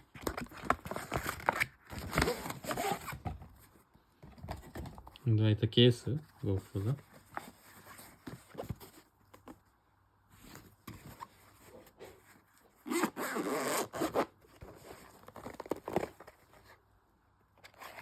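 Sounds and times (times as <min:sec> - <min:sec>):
zipper pulled open: 0:02.2 - 0:03.1, 0:12.8 - 0:14.3.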